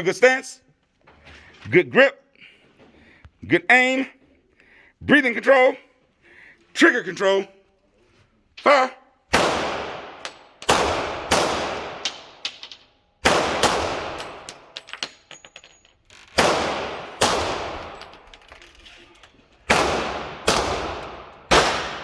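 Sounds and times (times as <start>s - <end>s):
pistol shots echoing: 9.3s - 14.8s, 16.4s - 18.2s, 19.7s - 22.0s
light metallic clinks: 14.2s - 16.1s, 17.8s - 19.6s.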